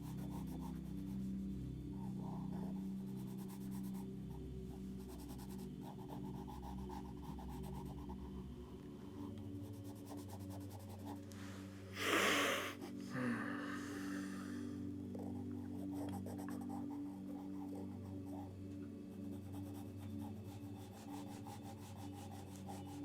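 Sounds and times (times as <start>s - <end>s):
pencil scratching on paper: 0.0s - 11.7s, 15.1s - 23.0s
steady low hum: 10.7s - 20.7s.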